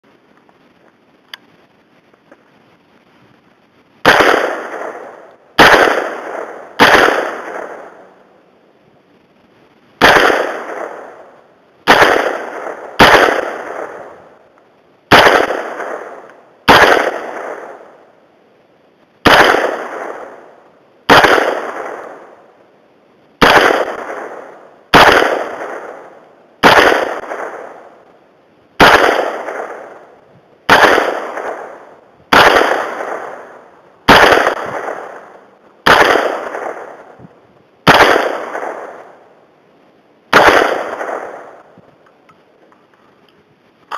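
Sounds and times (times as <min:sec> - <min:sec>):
rifle shots with echo: 0:04.0 - 0:08.3, 0:10.0 - 0:14.5, 0:15.1 - 0:18.2, 0:19.2 - 0:22.6, 0:23.4 - 0:28.2, 0:28.8 - 0:39.4, 0:40.3 - 0:41.8.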